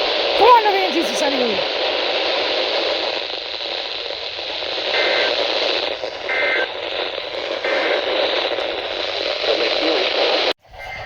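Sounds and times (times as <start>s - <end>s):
radio static hiss: 0.0s - 10.6s
two-tone digital data burst: 0.3s - 10.3s.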